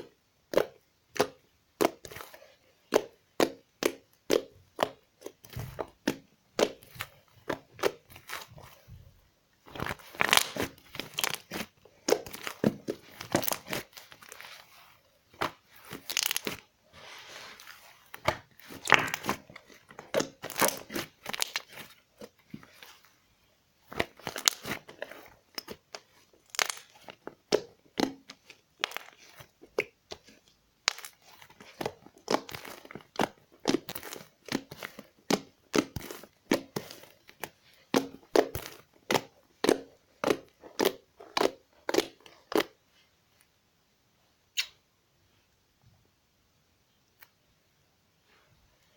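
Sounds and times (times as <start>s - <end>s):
slime crackling and popping: 0.5s - 8.7s, 9.7s - 14.6s, 15.3s - 16.7s, 17.8s - 22.8s, 23.9s - 42.8s.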